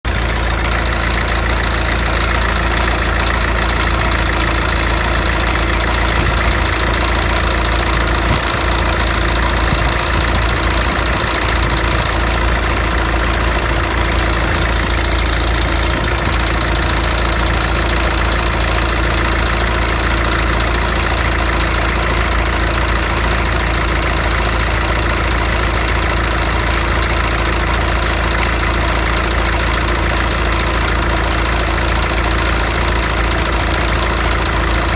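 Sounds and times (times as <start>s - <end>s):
alternator belt noise: 0.0s - 34.9s
car engine idling: 0.0s - 34.9s.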